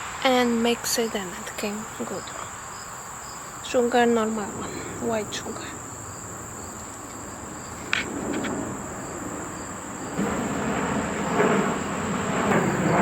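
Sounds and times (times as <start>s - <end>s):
insects trilling: 0.0s - 13.0s
rushing noise: 1.3s - 13.0s.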